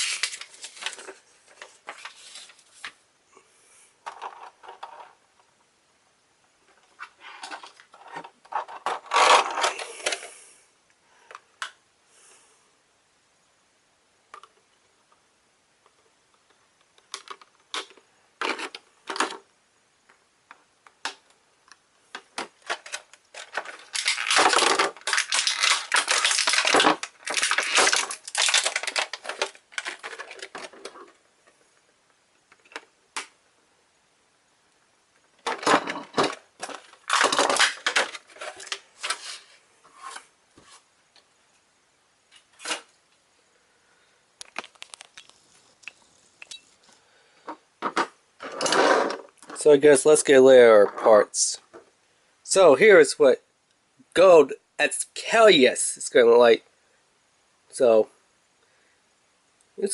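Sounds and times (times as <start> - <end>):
packaging crackling and crinkling: 0.0 - 3.0, 22.2 - 31.2, 35.4 - 39.6, 44.4 - 46.5.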